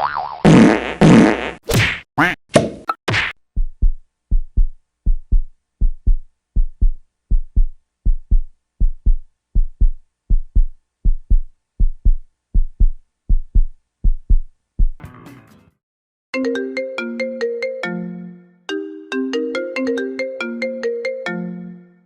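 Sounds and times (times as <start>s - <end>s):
heartbeat thumps: 3.6s - 15.0s.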